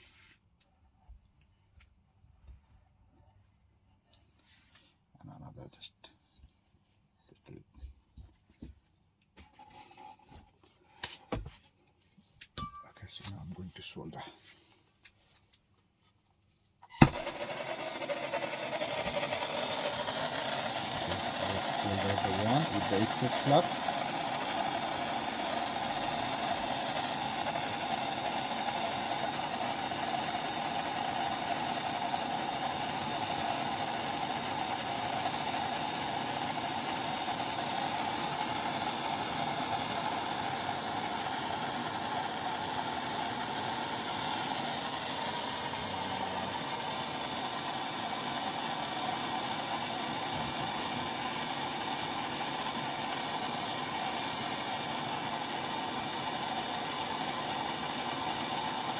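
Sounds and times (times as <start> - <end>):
blowtorch flame hissing: 16.9 - 58.9.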